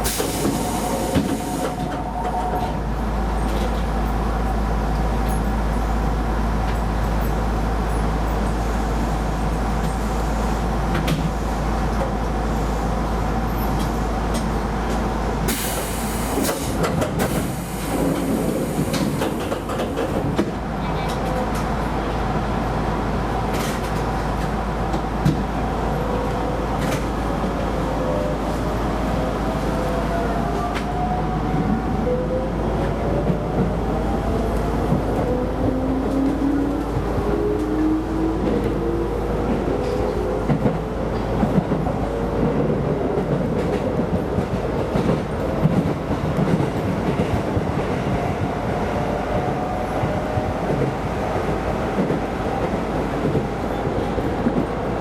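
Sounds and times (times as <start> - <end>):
rail joint clicks: 0.0 - 2.8, 10.8 - 12.2, 13.6 - 21.7, 23.4 - 25.5, 26.7 - 27.2, 33.2 - 55.0
electric train running on rails: 0.0 - 55.0.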